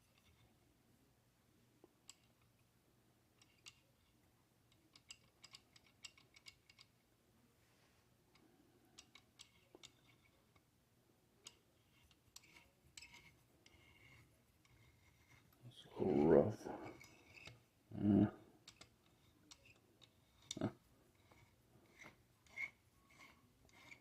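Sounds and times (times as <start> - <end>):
faint low hum: 0.0 - 24.0
small parts clicking: 2.0 - 2.6, 3.4 - 7.0, 8.3 - 10.7, 11.4 - 15.5, 16.8 - 17.6, 18.6 - 24.0.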